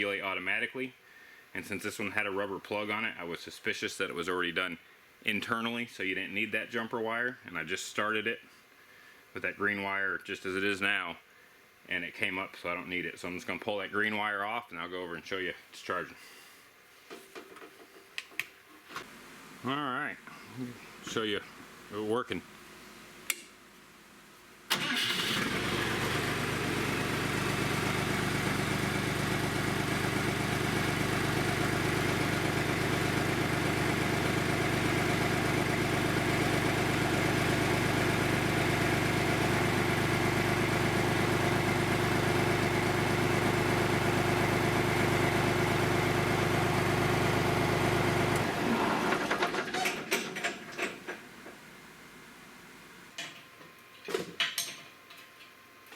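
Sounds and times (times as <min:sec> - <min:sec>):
dozer engine idling: 0:25.4 - 0:48.6.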